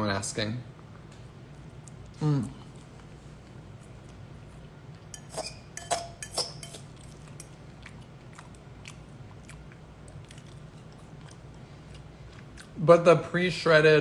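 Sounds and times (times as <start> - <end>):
low room hum: 0.0 - 14.0
tableware clinking: 5.2 - 6.8.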